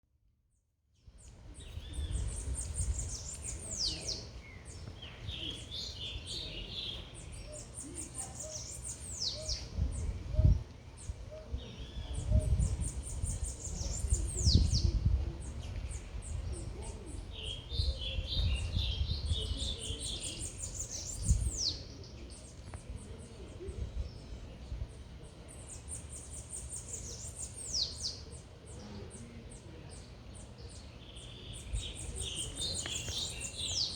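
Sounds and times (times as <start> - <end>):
bird twittering: 1.6 - 14.8.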